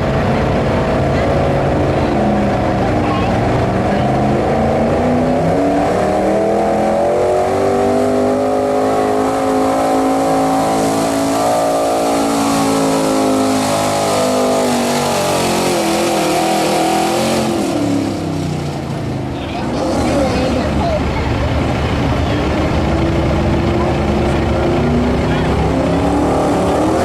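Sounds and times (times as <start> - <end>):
diesel engine running under load: 0.0 - 9.2, 17.6 - 27.0.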